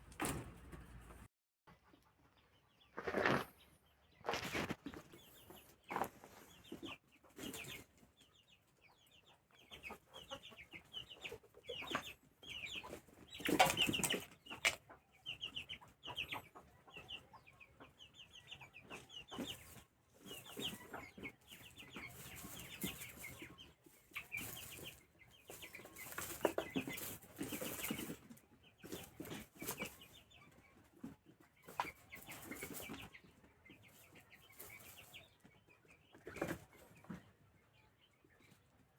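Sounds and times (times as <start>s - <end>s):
chickens clucking: 0.0s - 38.9s
rustling and wing flapping: 4.2s - 5.2s.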